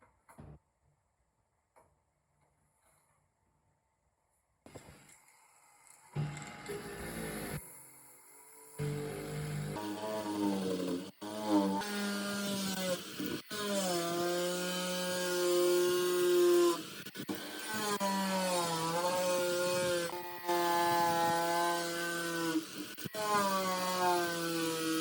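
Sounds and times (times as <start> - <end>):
power tool motor whining: 8.8 - 25.0.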